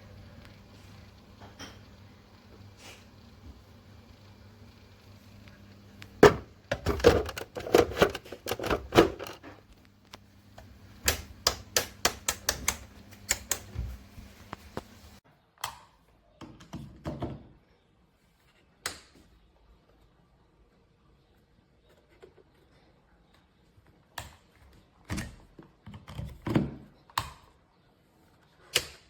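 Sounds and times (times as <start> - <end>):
low steady hum: 0.0 - 15.2
sharp clicks and knocks: 11.0 - 13.9.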